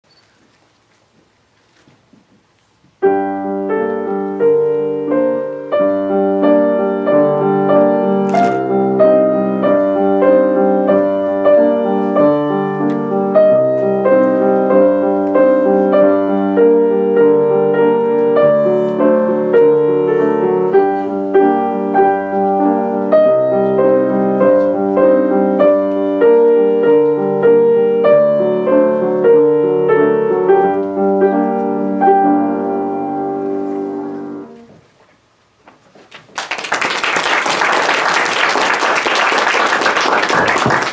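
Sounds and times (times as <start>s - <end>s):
piano melody over chords: 3.0s - 34.7s.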